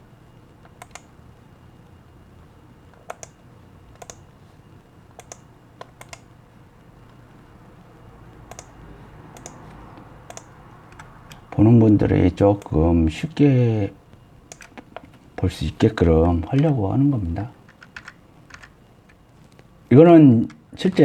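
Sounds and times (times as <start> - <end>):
faint low hum: 0.0 - 21.0
computer mouse clicks: 0.6 - 1.1, 2.9 - 4.3, 5.1 - 6.3, 8.3 - 12.0, 14.5 - 15.2, 17.7 - 19.7.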